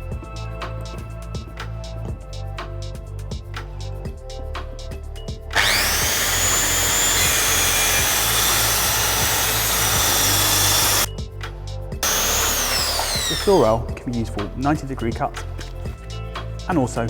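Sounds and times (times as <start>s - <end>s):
music with steady beat: 0.0s - 17.0s
circular saw whining and cutting: 5.6s - 11.1s, 12.0s - 13.8s.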